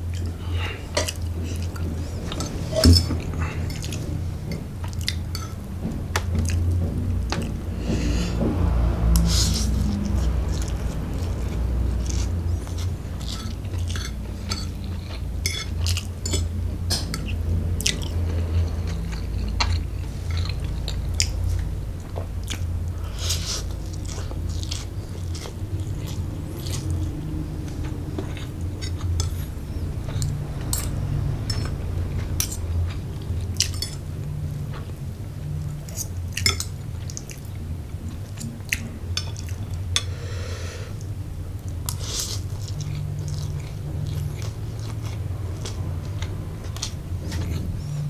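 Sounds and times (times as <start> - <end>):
chewing: 0.0 - 40.2, 41.0 - 48.0
steady low rumble: 0.0 - 48.0.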